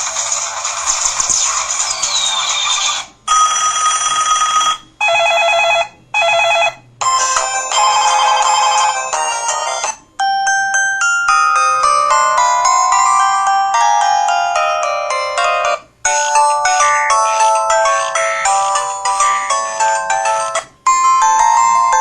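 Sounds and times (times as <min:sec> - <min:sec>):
chiming electronic melodies: 0:07.0 - 0:22.0
held electronic tone: 0:16.1 - 0:20.6.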